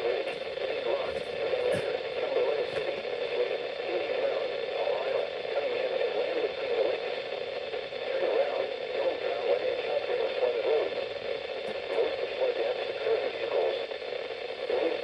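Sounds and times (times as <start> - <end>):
radio static hiss and crackle: 0.0 - 15.0.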